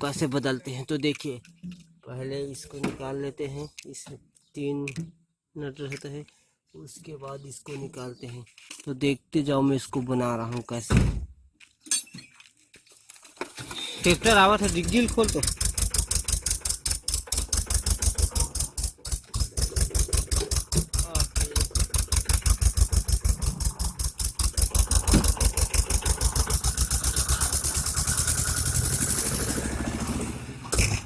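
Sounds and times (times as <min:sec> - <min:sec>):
tractor engine chugging: 0:14.0 - 0:31.0.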